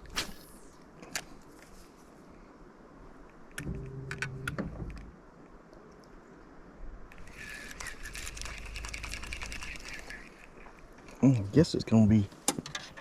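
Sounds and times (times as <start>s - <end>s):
low hum: 0.0s - 11.5s.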